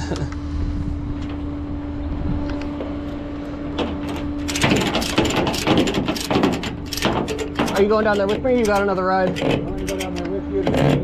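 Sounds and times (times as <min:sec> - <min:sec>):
clatter of knocks: 0:03.8 - 0:11.0.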